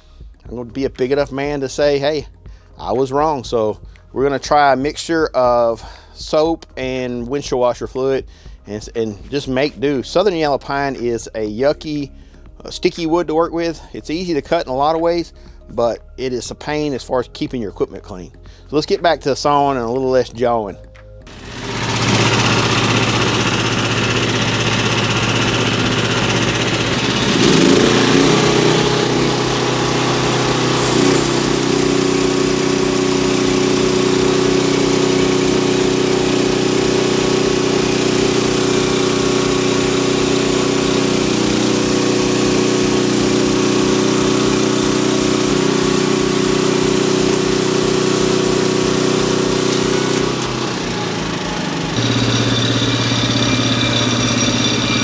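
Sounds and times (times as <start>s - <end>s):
sawmill engine revving and idling: 21.3s - 55.0s.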